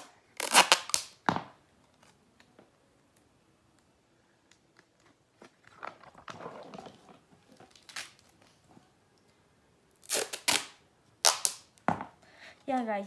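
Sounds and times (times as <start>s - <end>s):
paper ripping: 10.0s - 11.6s.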